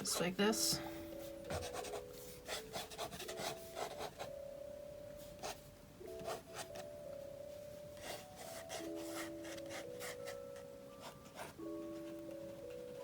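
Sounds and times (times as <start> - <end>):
soft background music: 0.0 - 13.0
pencil strokes scratching on paper: 1.2 - 4.3, 6.2 - 6.8, 8.0 - 10.4, 11.0 - 13.0.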